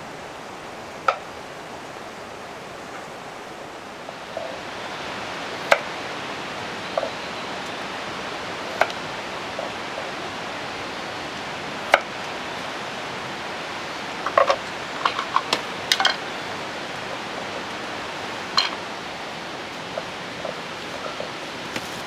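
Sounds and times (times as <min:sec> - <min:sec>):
rain falling: 0:00.0 - 0:22.0.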